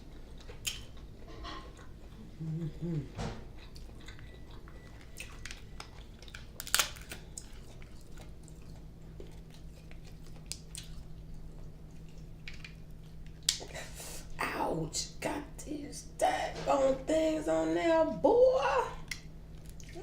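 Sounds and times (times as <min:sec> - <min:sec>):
chewing: 0:00.0 - 0:13.8, 0:19.0 - 0:20.0
seafood shells cracking: 0:05.0 - 0:08.5.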